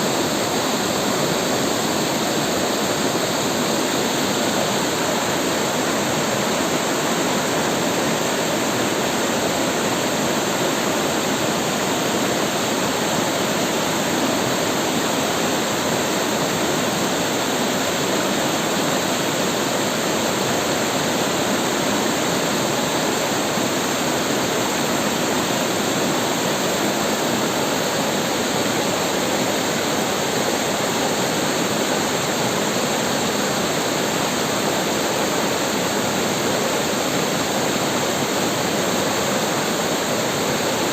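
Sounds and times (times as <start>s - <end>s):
river water rushing over rocks: 0.0s - 40.9s.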